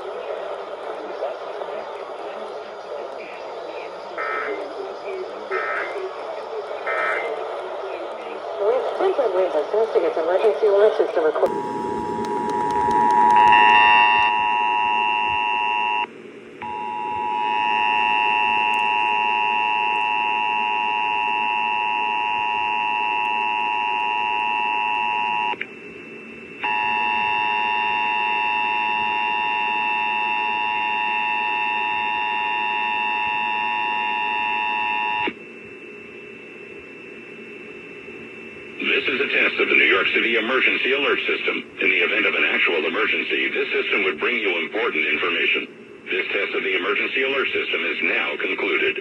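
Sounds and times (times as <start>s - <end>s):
radio hiss: 0.0s - 16.1s, 38.5s - 49.0s.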